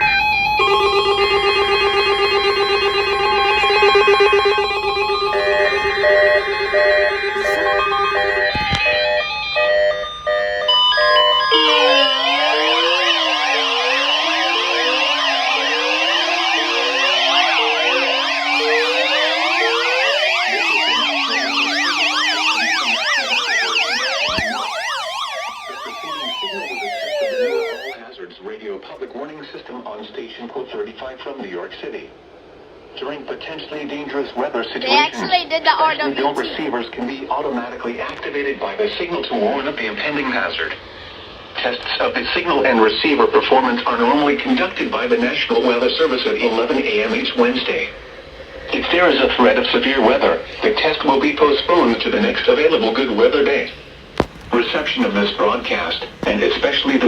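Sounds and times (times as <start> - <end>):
siren fast yelp sweeps: 0.0 - 28.0
siren slow wail: 0.0 - 28.0
synthetic electronic chord tones: 0.0 - 28.0.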